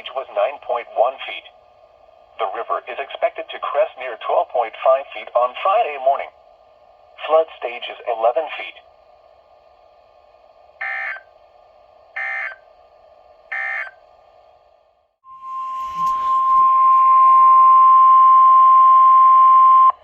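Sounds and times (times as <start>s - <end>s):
radio receiver hiss: 7.2s - 8.9s
steady warning alarm tone: 10.8s - 11.3s, 12.1s - 12.7s, 13.5s - 14.1s, 15.2s - 20.0s.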